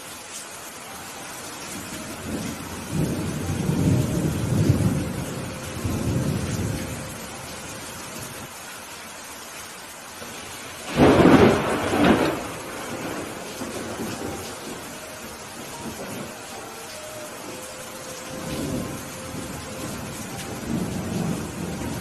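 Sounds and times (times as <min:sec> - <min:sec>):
steady rain: 0:00.0 - 0:22.0
rolling thunder rumble: 0:01.7 - 0:08.5, 0:10.2 - 0:17.6, 0:18.2 - 0:22.0
loud thunder crack: 0:10.8 - 0:14.8.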